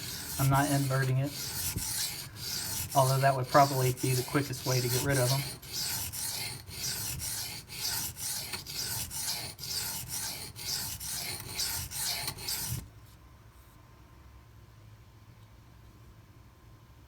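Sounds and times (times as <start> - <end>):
knife scraping on sharpening stone: 0.0 - 12.8.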